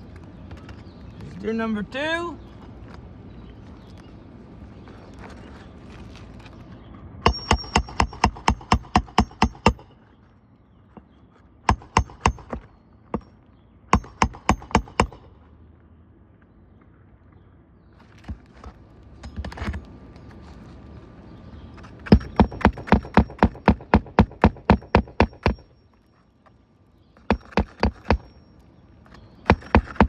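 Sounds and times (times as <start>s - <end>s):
hammer striking nail: 7.3s - 9.9s, 11.7s - 13.3s, 13.9s - 15.3s, 22.0s - 25.7s, 27.2s - 28.4s, 29.4s - 30.0s.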